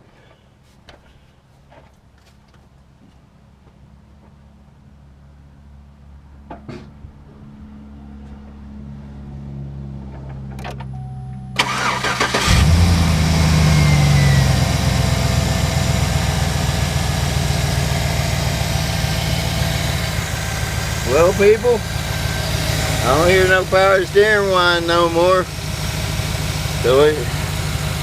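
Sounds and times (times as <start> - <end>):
pickup engine starting and idling: 11.6 - 28.0.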